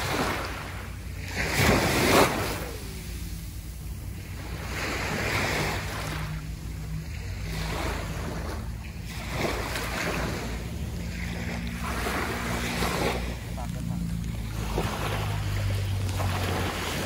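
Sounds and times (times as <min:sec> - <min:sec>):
rush of surf: 0:00.0 - 0:17.0
sea waves breaking on beach: 0:00.0 - 0:17.0.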